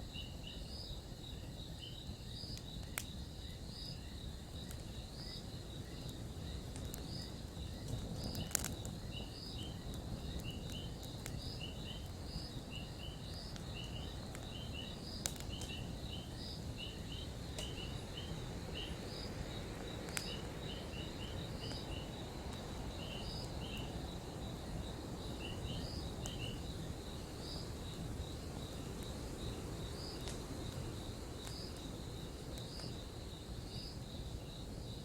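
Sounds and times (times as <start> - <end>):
campfire burning: 0.1 - 35.0
fire crackles and pops: 0.1 - 35.0.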